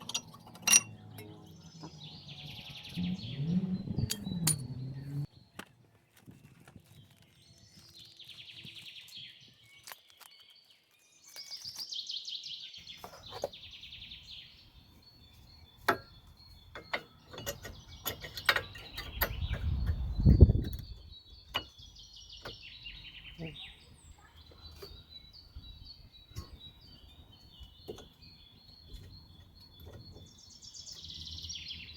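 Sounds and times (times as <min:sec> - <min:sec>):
birds trilling: 0:00.0 - 0:05.3
sharp clicks and knocks: 0:15.8 - 0:21.8.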